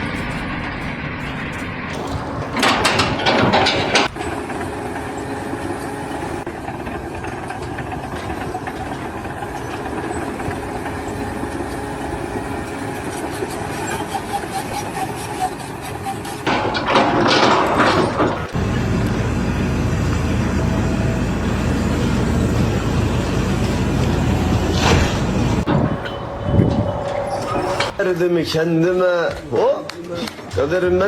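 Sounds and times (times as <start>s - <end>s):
heavy machinery running: 0.0s - 28.2s.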